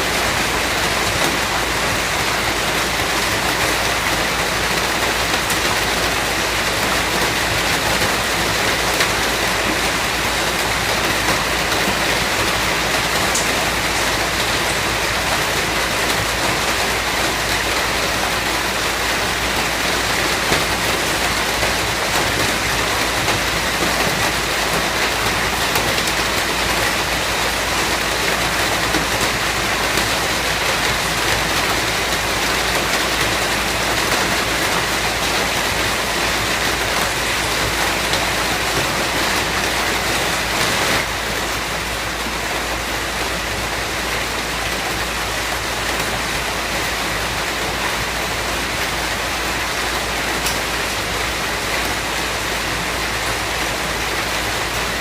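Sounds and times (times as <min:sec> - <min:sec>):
dense rainfall hiss: 0:00.0 - 0:55.0.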